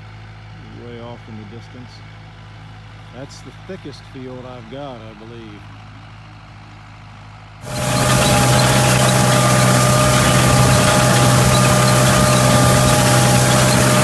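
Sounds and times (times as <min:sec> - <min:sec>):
tractor engine running: 0:07.6 - 0:14.0.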